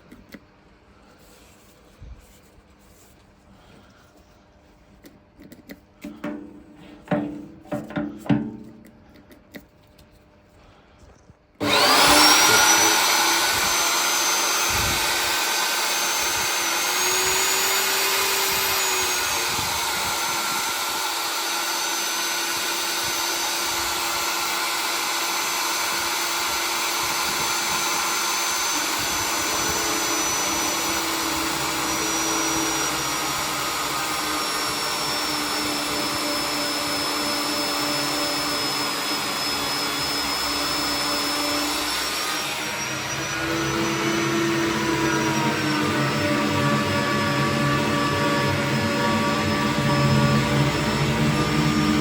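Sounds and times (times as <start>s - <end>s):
drill motor whining: 11.6s - 52.0s.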